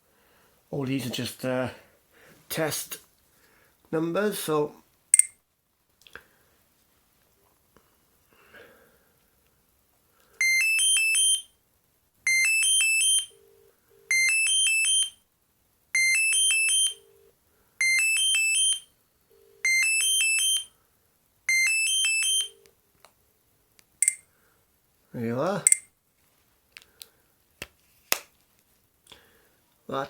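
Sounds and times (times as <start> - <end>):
mobile phone ringing beeps: 10.4 - 11.5, 12.3 - 15.2, 16.0 - 20.7, 21.5 - 22.7
faint ringback tone: 24.0 - 24.3.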